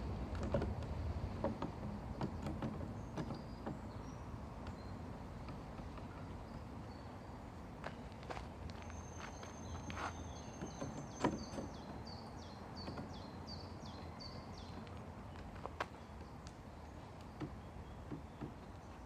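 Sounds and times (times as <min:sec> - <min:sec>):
songbird singing: 0:00.0 - 0:19.0
hammer and chisel knocking wood: 0:17.4 - 0:18.7.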